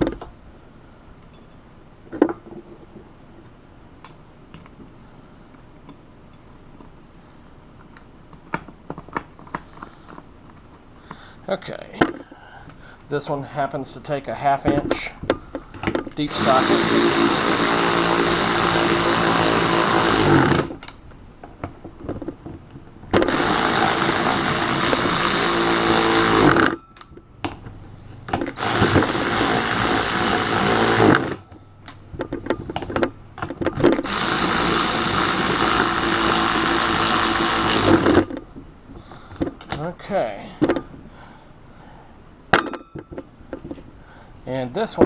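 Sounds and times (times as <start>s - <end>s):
power drill spinning nuts: 15.9s - 20.9s, 23.1s - 26.8s, 28.3s - 31.5s, 33.7s - 38.4s.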